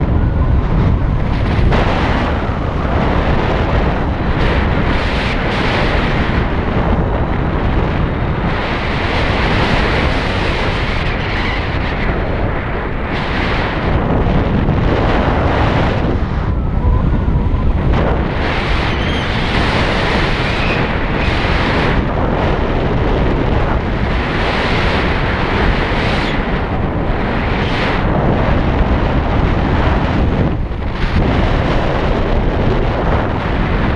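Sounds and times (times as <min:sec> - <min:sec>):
wind buffeting microphone: 0:00.0 - 0:33.9.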